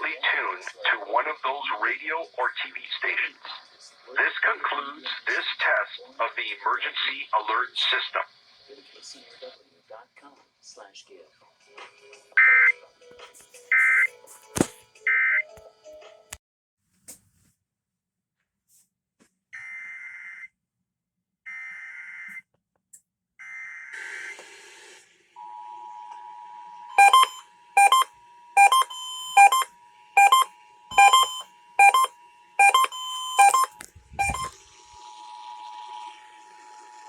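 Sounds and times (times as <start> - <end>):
loud repeating beep: 13.8 - 14.1, 27.0 - 34.5
two-tone attention signal: 26.9 - 34.6.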